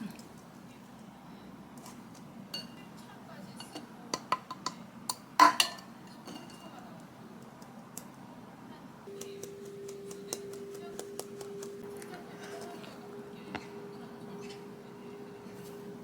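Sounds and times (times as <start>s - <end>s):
dishware clinking: 2.5s - 6.8s
kitchen appliance humming: 9.1s - 16.0s.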